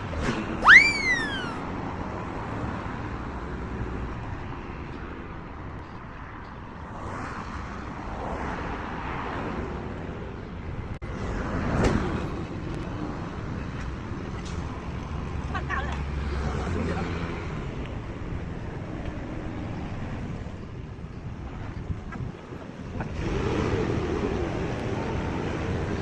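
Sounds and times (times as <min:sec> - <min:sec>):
vehicles passing on road: 0:00.0 - 0:26.0
falling whistle-like tone: 0:00.6 - 0:01.6.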